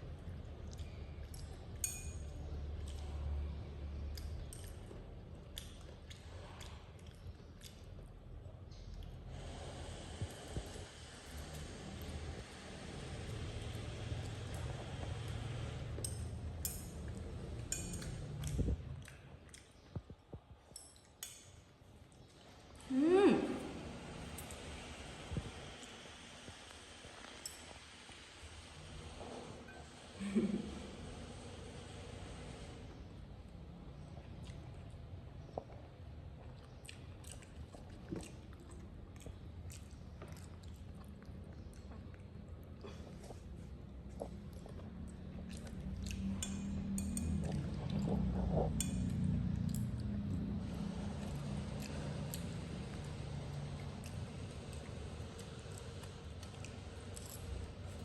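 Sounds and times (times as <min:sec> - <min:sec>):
monkey eating clicks and clinks: 0:00.8 - 0:03.1, 0:16.0 - 0:22.4, 0:27.3 - 0:27.8, 0:44.9 - 0:50.6, 0:53.5 - 0:58.0.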